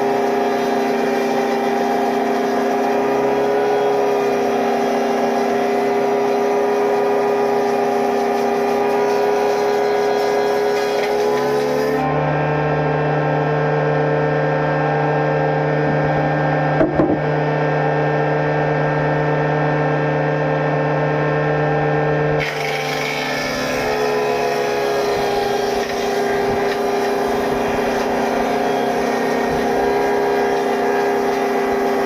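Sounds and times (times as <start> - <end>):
woodworking machine running: 0.0 - 21.7, 22.4 - 32.0
sharp knock: 16.8 - 17.2.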